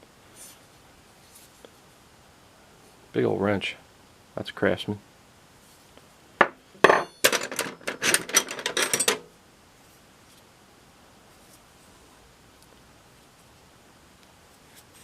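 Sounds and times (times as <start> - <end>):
metal tools clinking in toolbox: 6.8 - 9.3.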